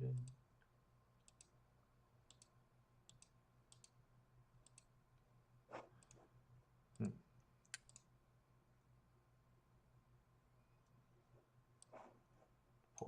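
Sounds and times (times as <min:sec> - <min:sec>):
computer mouse clicks: 0:01.2 - 0:01.6, 0:02.3 - 0:02.5, 0:03.1 - 0:04.0, 0:04.6 - 0:04.9, 0:06.0 - 0:06.2, 0:06.9 - 0:08.1.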